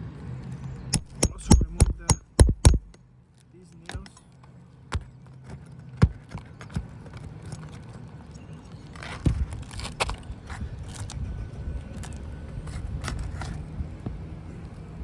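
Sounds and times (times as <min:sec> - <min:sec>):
sharp knocks: 0:01.0 - 0:03.0.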